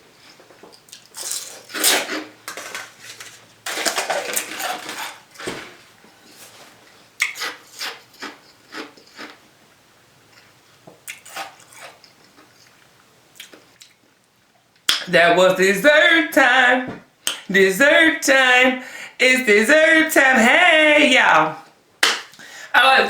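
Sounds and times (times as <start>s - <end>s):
ice being chewed: 0.2s - 5.5s, 6.2s - 9.4s, 10.3s - 14.0s.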